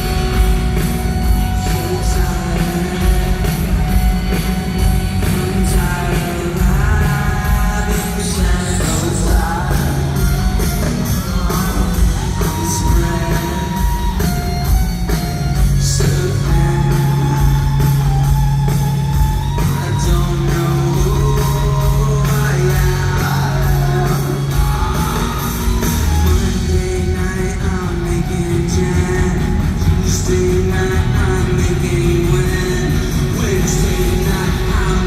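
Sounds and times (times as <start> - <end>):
person singing: 0.0 - 14.8, 15.5 - 18.3, 19.5 - 35.0
bass guitar: 0.0 - 35.0
distorted electric guitars: 0.0 - 35.0
drum beat: 0.0 - 35.0.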